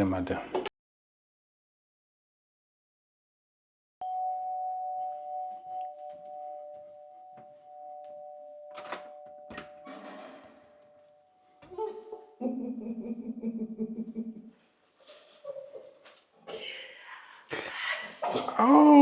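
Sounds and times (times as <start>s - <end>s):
two-tone doorbell chime: 4.0s - 11.6s
rustling: 14.4s - 16.5s.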